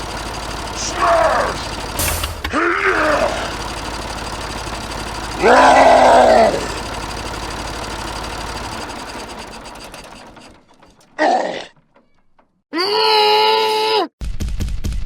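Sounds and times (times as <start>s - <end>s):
person exclaiming: 2.5s - 3.6s, 5.4s - 6.8s, 11.2s - 11.7s, 12.7s - 14.2s.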